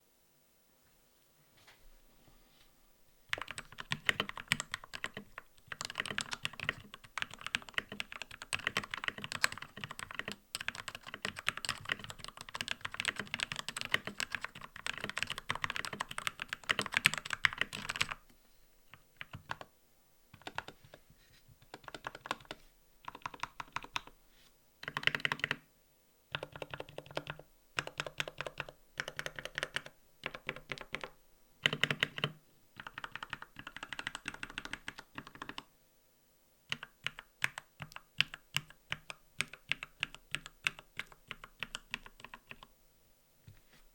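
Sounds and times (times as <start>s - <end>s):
typing on mechanical keyboard: 3.3s - 18.2s, 18.9s - 19.7s, 20.4s - 21.0s, 21.6s - 24.1s, 24.8s - 25.6s, 26.3s - 35.7s, 36.7s - 42.7s.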